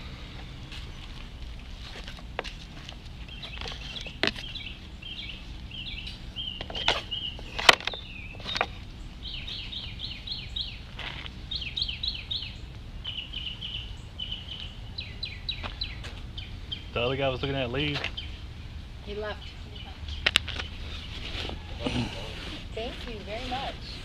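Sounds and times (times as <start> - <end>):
small bird chirping: 3.2 - 17.1.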